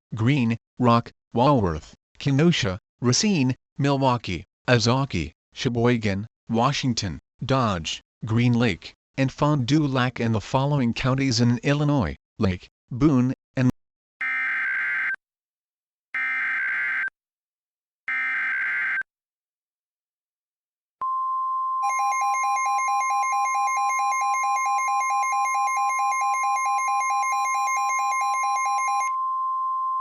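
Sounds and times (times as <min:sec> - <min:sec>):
fast pulsing alarm tone: 0:21.9 - 0:29.1.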